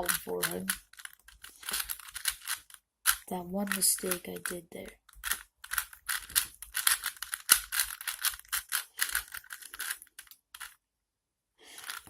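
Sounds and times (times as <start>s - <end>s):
plastic puzzle cube clicking: 0.0s - 10.8s, 11.8s - 12.0s.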